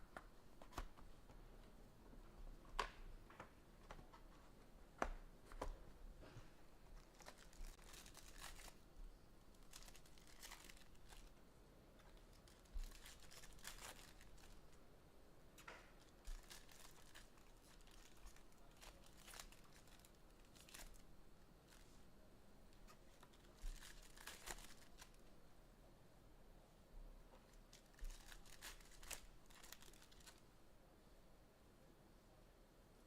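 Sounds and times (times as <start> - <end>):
cards clicking and rustling: 0.1 - 1.4, 22.9 - 25.2, 27.5 - 30.4
wrapper crinkling and tearing: 7.0 - 8.8, 9.6 - 11.4, 12.0 - 14.7, 16.0 - 21.0, 23.1 - 25.3, 27.5 - 30.4.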